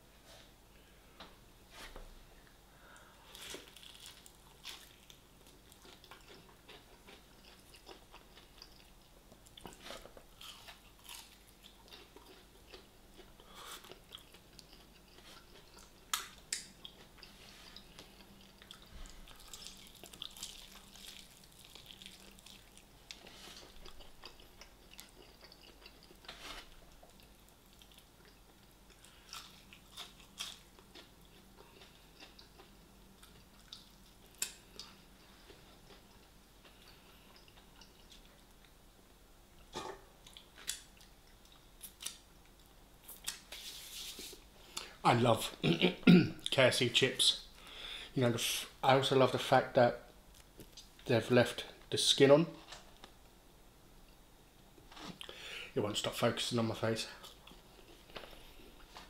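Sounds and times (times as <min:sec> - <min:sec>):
person chewing: 0:03.3 - 0:38.7, 0:54.8 - 0:55.4.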